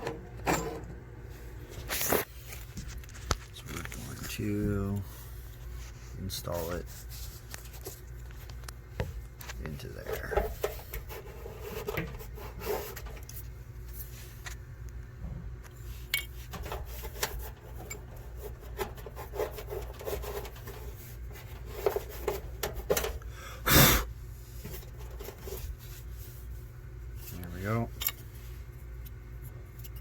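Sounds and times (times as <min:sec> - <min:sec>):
small clicks and scrapes: 0:06.6 - 0:15.0, 0:15.6 - 0:23.2, 0:24.6 - 0:26.4, 0:27.2 - 0:30.0.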